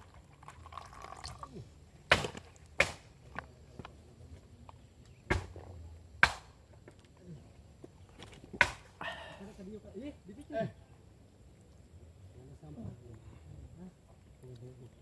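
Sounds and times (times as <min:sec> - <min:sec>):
sharp knocks on wood: 0:05.3 - 0:05.6, 0:06.2 - 0:06.5, 0:08.6 - 0:08.9.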